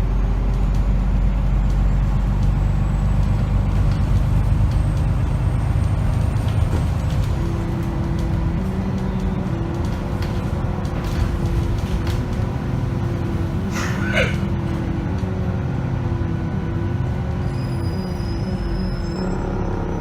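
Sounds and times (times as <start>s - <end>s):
bus drivetrain rumble: 0.0s - 20.0s
brief squeal: 17.4s - 20.0s.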